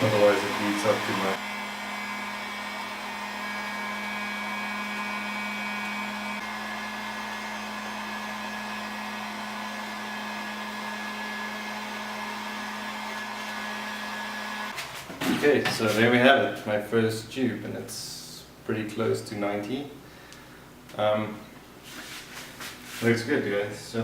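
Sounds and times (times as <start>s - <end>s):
heat gun blowing hum: 0.0s - 14.8s.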